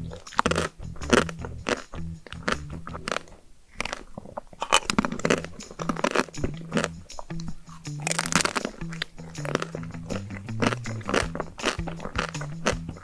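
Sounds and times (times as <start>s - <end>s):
crunching and chewing: 0.0s - 13.0s.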